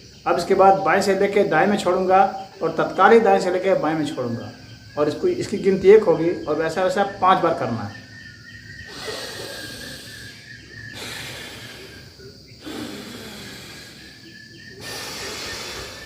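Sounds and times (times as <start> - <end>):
forceful breathing through nose: 8.8 - 16.0.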